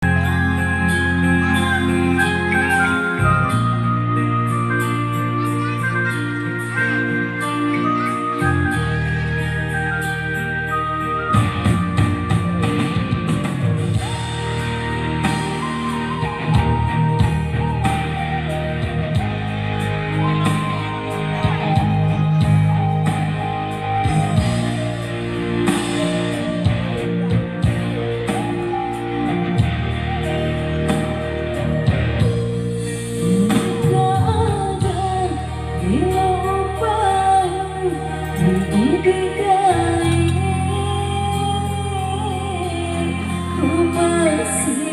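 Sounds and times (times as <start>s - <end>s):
pop band with drum beat: 0.0s - 44.9s
person singing: 32.8s - 44.9s.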